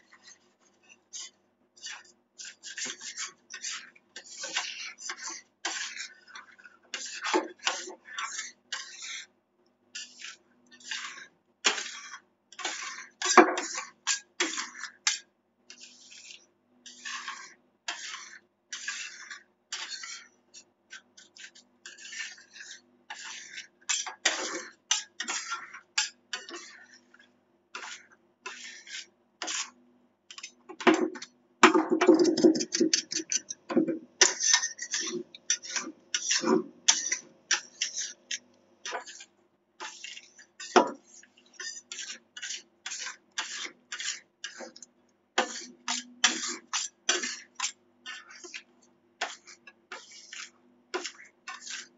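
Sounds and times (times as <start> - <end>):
metal spatulas chopping and scraping: 1.1 - 9.3, 9.9 - 51.9.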